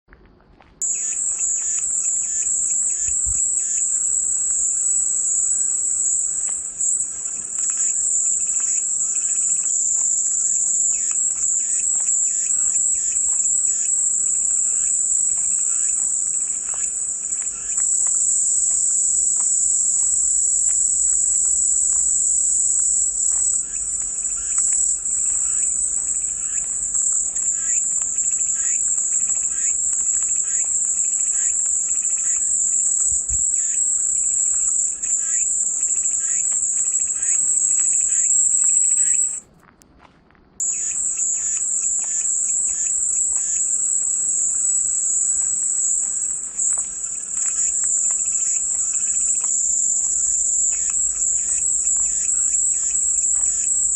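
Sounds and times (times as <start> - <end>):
cicadas droning: 0.8 - 39.5, 40.6 - 53.9.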